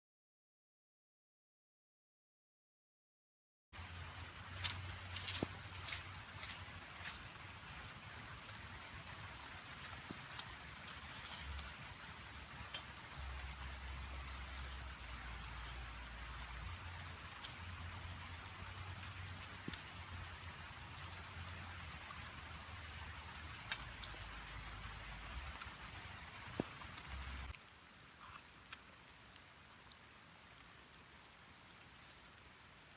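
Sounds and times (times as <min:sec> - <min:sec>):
close raindrops striking: 0:03.8 - 0:32.9
rain falling in forest: 0:03.8 - 0:32.9.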